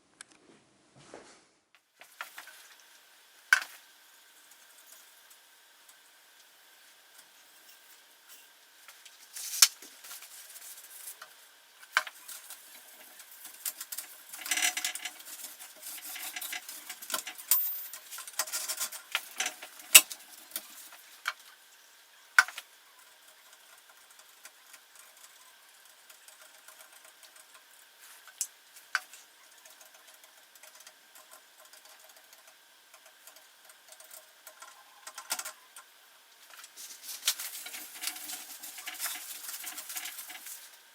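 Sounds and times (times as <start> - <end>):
soft rustling and scraping: 6.8 - 11.4, 36.4 - 40.9.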